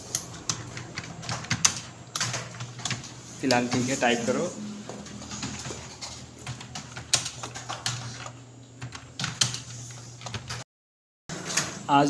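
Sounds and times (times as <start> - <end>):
low hum: 4.2 - 6.4.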